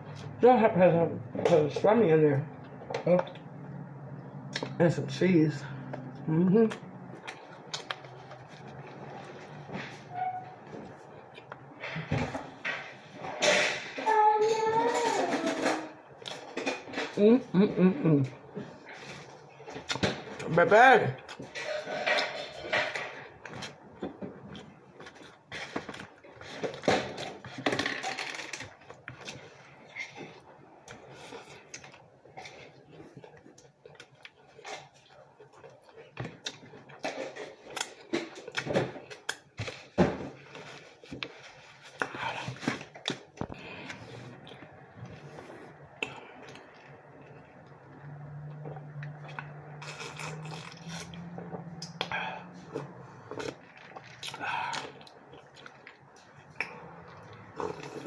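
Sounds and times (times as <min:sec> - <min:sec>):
chewing and mouth clicks: 0:05.8 - 0:09.5, 0:28.6 - 0:39.8, 0:41.2 - 0:58.0.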